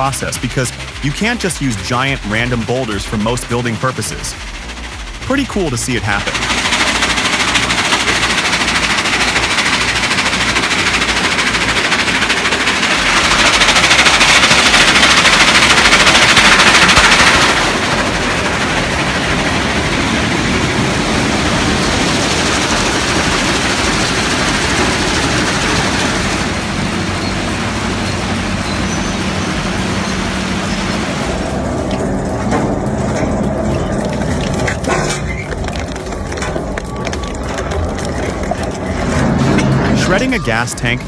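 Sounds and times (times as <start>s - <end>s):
rock crusher clattering stone: 32.6s - 40.2s.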